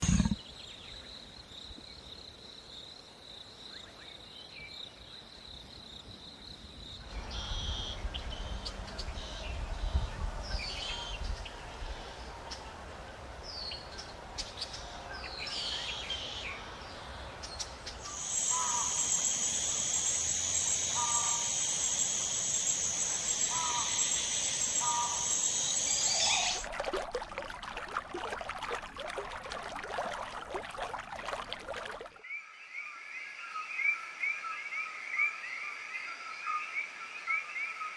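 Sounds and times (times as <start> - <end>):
birds chirping: 18.0 - 26.7.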